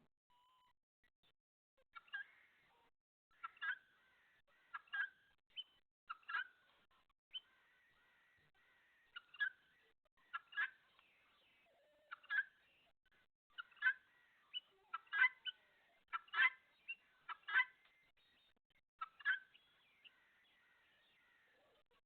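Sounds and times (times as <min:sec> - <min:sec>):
poultry calling: 0:03.4 - 0:05.2, 0:07.4 - 0:10.8, 0:13.5 - 0:18.1, 0:19.0 - 0:21.8.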